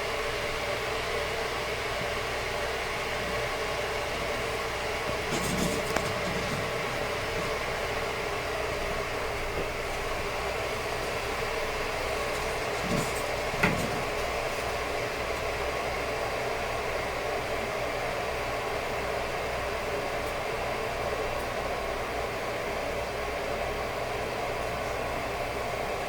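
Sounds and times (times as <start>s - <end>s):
mechanical hum and hiss: 0.0s - 26.0s.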